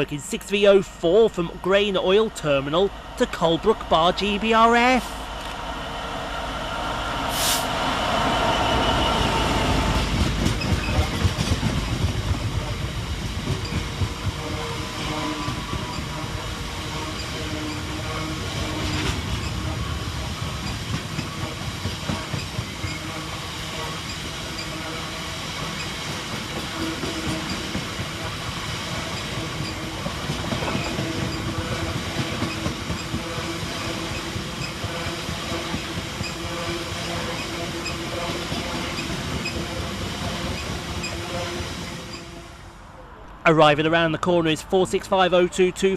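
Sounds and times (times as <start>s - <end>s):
wagons clickety-clack over rail joints: 10.0s - 14.5s, 20.6s - 23.1s, 25.6s - 41.2s
wheel squeal: 10.6s - 11.2s, 35.8s - 38.1s.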